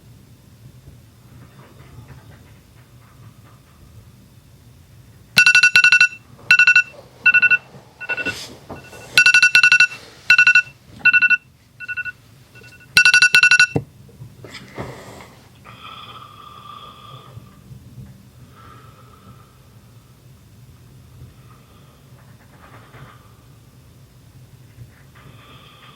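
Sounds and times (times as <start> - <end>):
electronic alarm trilling: 5.4 - 13.8.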